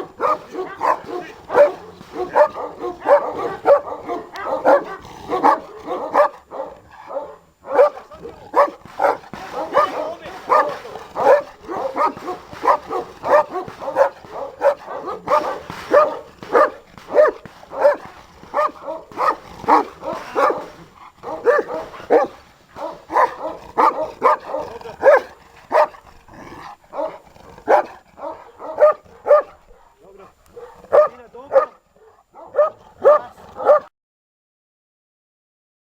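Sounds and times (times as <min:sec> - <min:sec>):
dogs barking: 0:00.0 - 0:33.9.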